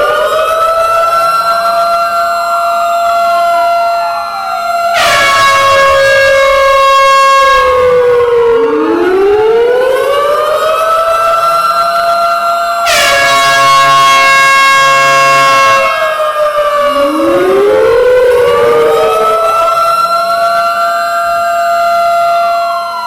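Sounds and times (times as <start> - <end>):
air horn blasts: 4.9 - 8.0, 12.8 - 16.3.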